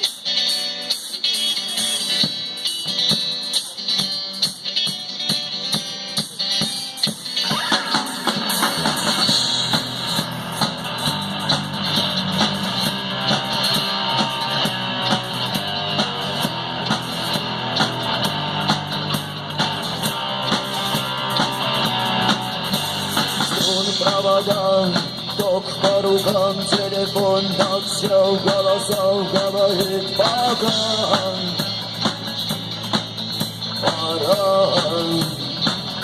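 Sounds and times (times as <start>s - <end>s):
drum kit beat: 0.0s - 36.0s
rock guitars: 0.0s - 36.0s
person singing: 23.5s - 31.7s, 33.8s - 35.6s.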